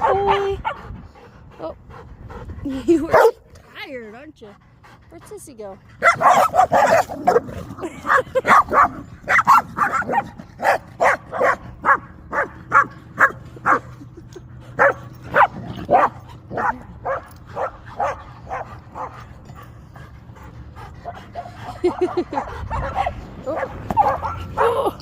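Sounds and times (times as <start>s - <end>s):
dog barking: 6.0s - 7.4s, 8.1s - 13.8s, 14.8s - 19.2s.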